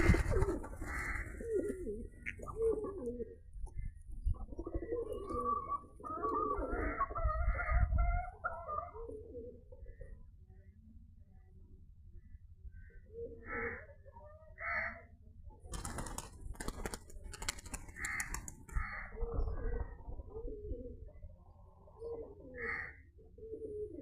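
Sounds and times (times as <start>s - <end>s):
pigeons cooing: 0.0s - 10.1s, 17.4s - 24.0s.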